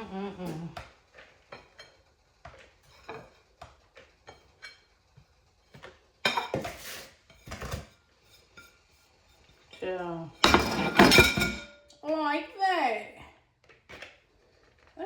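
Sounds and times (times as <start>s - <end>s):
dishes clattering: 1.5s - 2.0s, 6.2s - 8.7s, 10.4s - 11.9s
dishes clinking and knocking: 1.5s - 2.0s, 5.8s - 8.7s, 10.4s - 11.9s.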